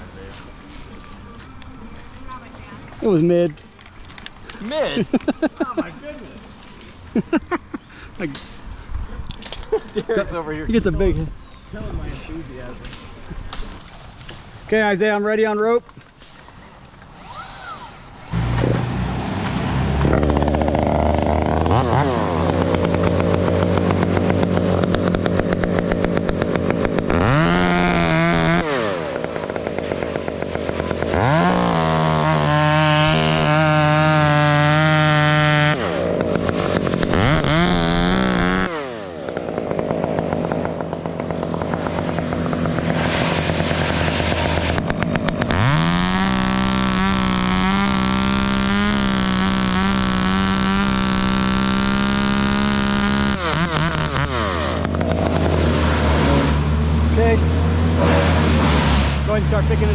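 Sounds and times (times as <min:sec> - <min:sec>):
two-stroke chainsaw revving: 0:19.8 - 0:59.9.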